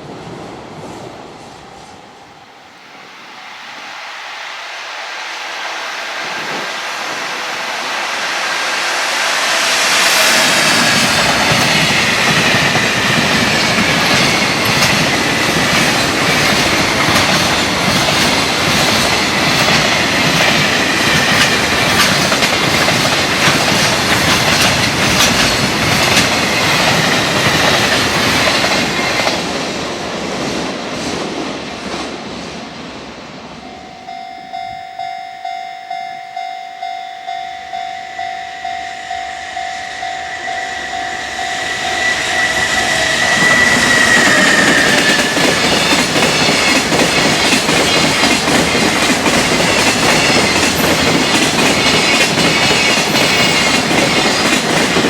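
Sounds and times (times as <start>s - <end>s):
train wheels clickety-clack: 6.2s - 32.5s, 40.4s - 55.0s.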